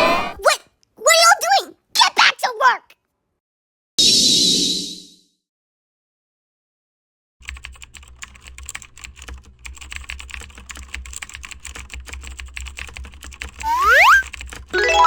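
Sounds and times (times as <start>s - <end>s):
typing on a keyboard: 7.4s - 14.8s
rising whistle: 13.6s - 14.2s.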